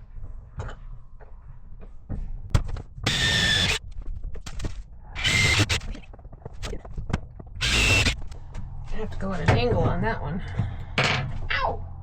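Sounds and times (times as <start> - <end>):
power drill drilling into wood: 3.1 - 3.8, 5.2 - 5.9, 7.6 - 8.2.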